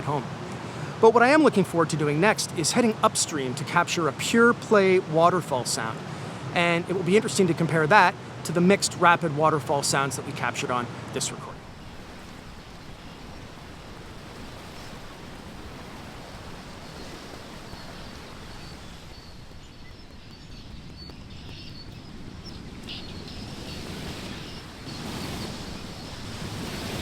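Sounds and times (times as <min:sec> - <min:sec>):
creek rushing: 0:00.0 - 0:19.5
faint bird chirps: 0:16.8 - 0:26.2.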